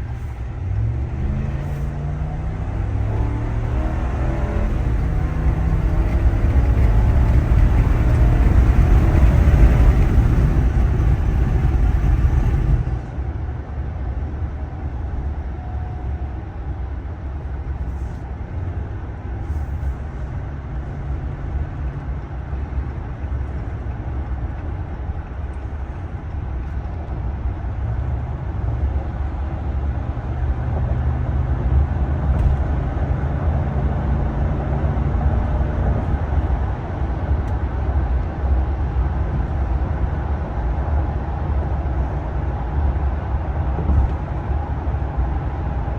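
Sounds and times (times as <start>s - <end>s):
engine humming: 0.0s - 13.4s
road and wind noise: 0.0s - 45.9s.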